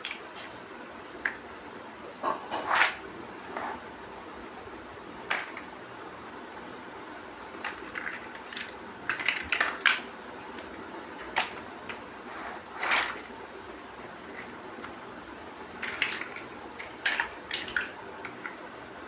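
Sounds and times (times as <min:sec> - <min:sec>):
plastic blocks clicking: 0:07.6 - 0:12.0, 0:15.8 - 0:18.6.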